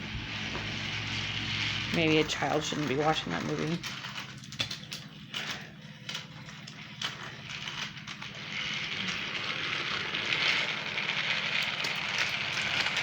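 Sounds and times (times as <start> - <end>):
toy train motor whirring: 0.0 - 13.0.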